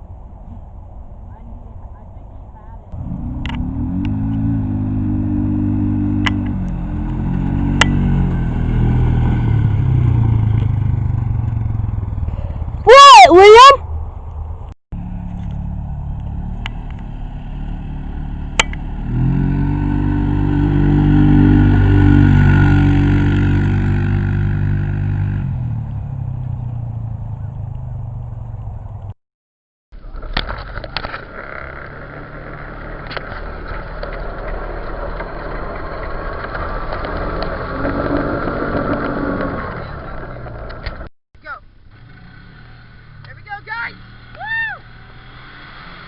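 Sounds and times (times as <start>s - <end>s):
vehicle engine revving: 2.9s - 13.0s, 15.0s - 29.1s, 31.0s - 41.1s, 41.8s - 46.0s
rough noise: 30.0s - 41.1s.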